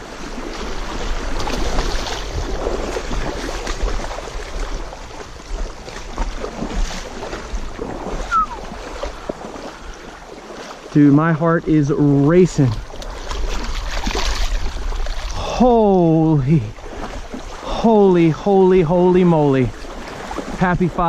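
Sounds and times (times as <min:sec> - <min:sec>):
wind on microphone: 0:00.0 - 0:10.2
water splashing: 0:00.0 - 0:21.0.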